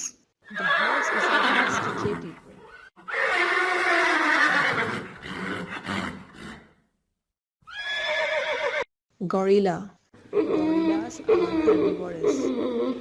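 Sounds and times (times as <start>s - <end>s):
horse neighing: 0.4s - 6.8s, 7.6s - 8.9s, 10.3s - 13.0s.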